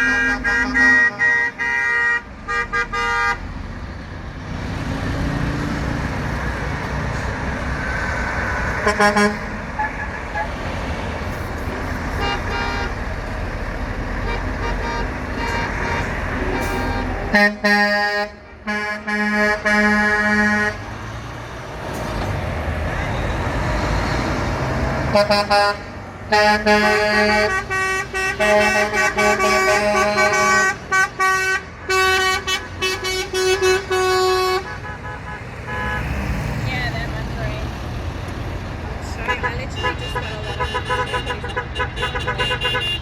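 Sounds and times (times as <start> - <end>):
truck horns blasting: 0.0 - 3.7, 7.7 - 10.7, 11.5 - 13.2, 14.1 - 20.9, 24.6 - 36.4, 39.0 - 43.0
traffic rumble: 0.0 - 43.0.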